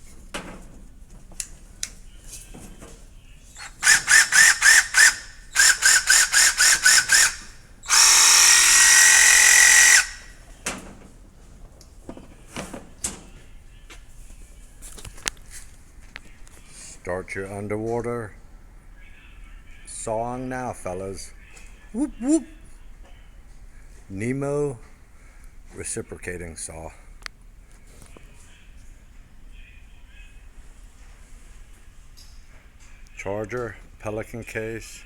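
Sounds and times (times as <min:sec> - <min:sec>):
reciprocating saw motor: 0:03.6 - 0:10.3.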